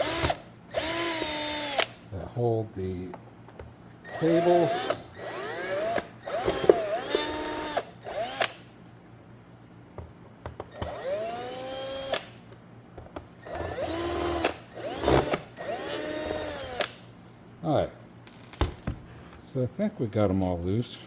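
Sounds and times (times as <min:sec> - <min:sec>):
cordless driver whining: 0:00.0 - 0:02.0, 0:04.0 - 0:08.7, 0:10.7 - 0:12.4, 0:13.4 - 0:17.0.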